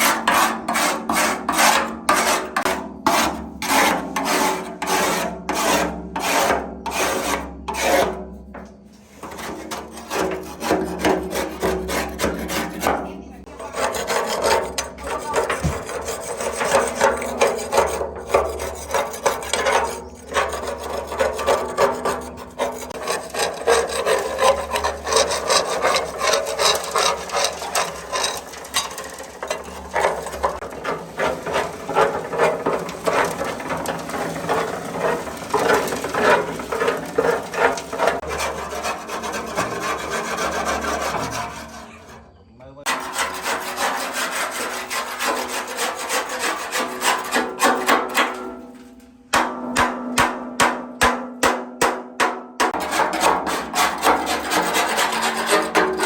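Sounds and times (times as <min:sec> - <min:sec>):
hand scraping rasping strokes: 0:00.0 - 0:42.2, 0:42.9 - 0:51.1, 0:52.6 - 0:56.0.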